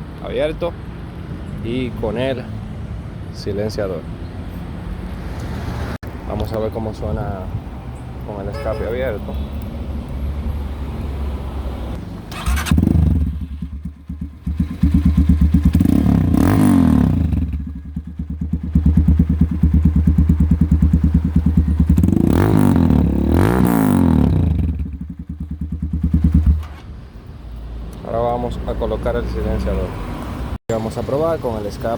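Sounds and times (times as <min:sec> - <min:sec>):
unmuffled motorcycle engine revving: 0:12.3 - 0:26.8.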